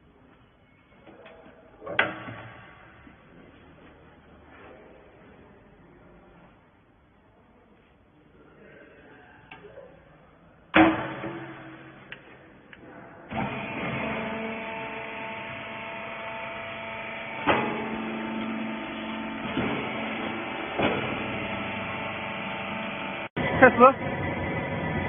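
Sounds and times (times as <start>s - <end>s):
hydraulic power unit humming: 10.6s - 25.0s
machine clanking: 10.7s - 12.3s, 13.3s - 23.2s.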